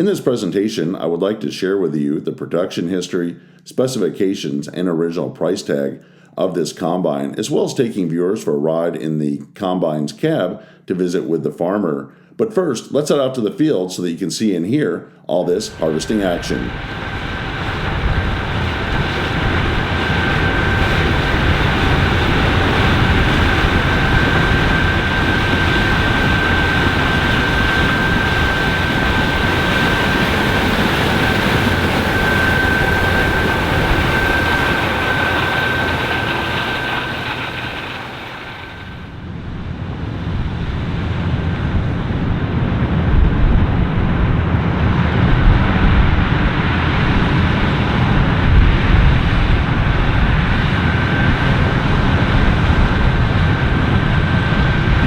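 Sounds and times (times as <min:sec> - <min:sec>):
high machinery whine: 0:15.6 - 0:39.2, 0:43.8 - 0:55.0
combine harvester engine drone: 0:15.6 - 0:55.0.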